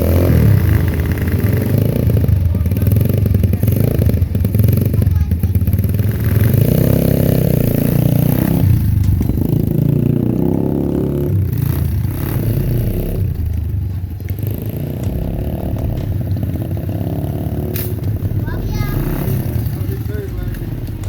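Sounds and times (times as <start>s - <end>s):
engine running: 0.0s - 21.0s
scraping and clatter: 13.1s - 21.0s.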